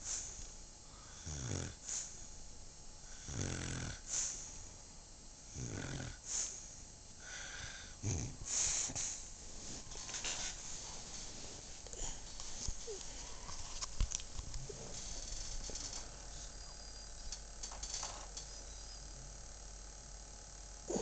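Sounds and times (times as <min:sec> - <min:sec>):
woman snoring: 0:00.9 - 0:02.2, 0:03.0 - 0:04.5, 0:05.5 - 0:06.2, 0:07.2 - 0:08.5.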